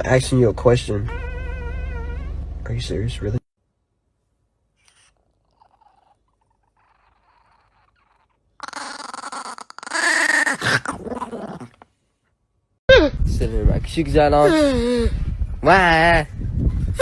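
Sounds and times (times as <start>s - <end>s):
animal drawn-out cry: 1.0s - 2.5s, 4.8s - 11.8s.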